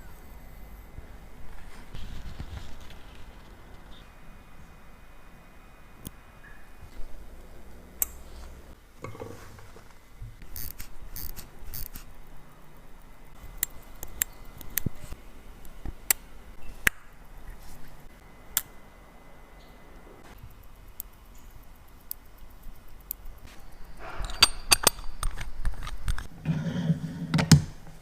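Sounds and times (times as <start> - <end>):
small metal tools clicking: 10.5 - 12.1.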